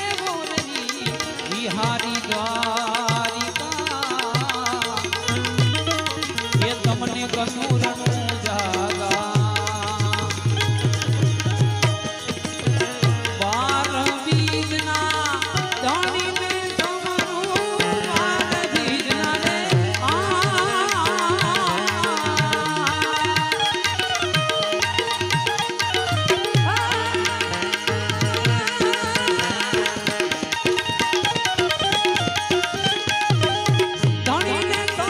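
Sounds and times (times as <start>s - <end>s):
tabla playing rhythm: 0.0s - 35.0s.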